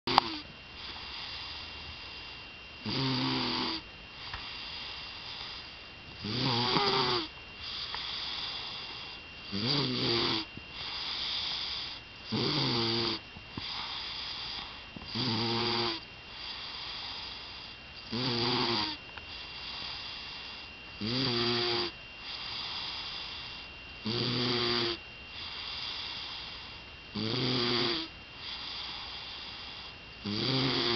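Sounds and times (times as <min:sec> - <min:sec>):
loud rattling snores: 0:00.1 - 0:01.6, 0:02.8 - 0:05.6, 0:06.2 - 0:30.9
quiet breathing: 0:00.7 - 0:02.7, 0:04.1 - 0:05.9, 0:06.8 - 0:09.4, 0:10.4 - 0:12.1, 0:13.5 - 0:15.2, 0:15.9 - 0:18.1, 0:18.9 - 0:20.8, 0:21.9 - 0:23.8, 0:25.2 - 0:26.9, 0:28.1 - 0:30.1.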